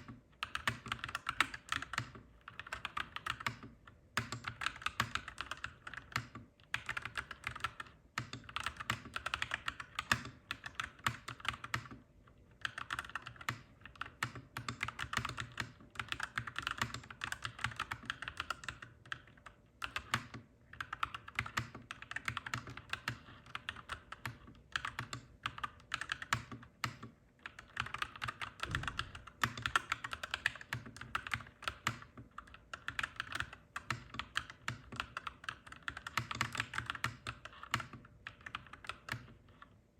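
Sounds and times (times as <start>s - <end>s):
mechanical keyboard typing: 0.0s - 39.7s.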